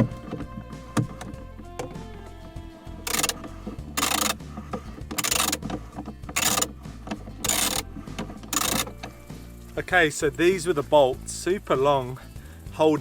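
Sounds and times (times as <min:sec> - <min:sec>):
ratchet wrench clicking: 0:03.0 - 0:09.2.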